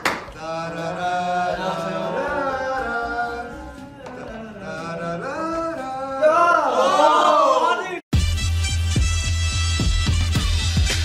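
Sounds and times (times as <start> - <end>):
men singing together: 0.3 - 7.0.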